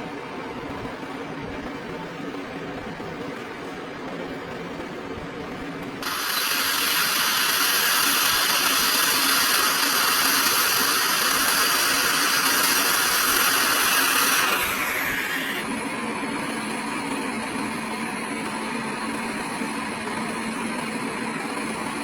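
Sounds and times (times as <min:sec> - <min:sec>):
hot air station blowing: 0:06.0 - 0:17.1.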